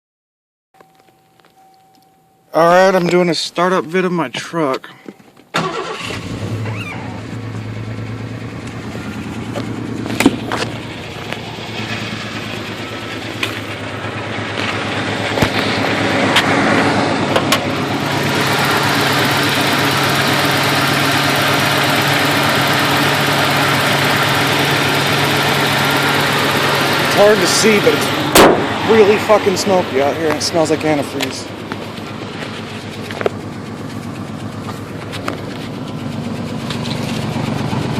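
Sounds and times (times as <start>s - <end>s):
engine idling roughly: 5.6s - 37.9s
sharp engine pops: 28.3s - 28.8s.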